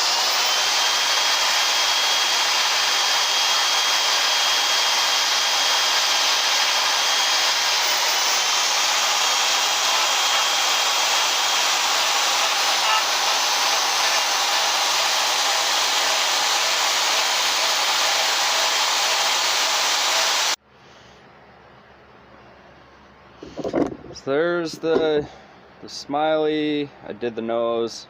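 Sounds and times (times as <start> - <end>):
power carving tool on wood: 0.0 - 20.6.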